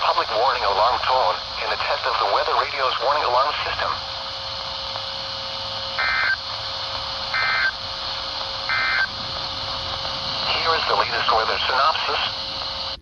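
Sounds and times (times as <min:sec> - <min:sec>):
faint hum: 0:00.0 - 0:13.0
radio reception hiss: 0:00.0 - 0:13.0
two-tone digital data warble: 0:05.9 - 0:06.4, 0:07.3 - 0:07.8, 0:08.6 - 0:09.2.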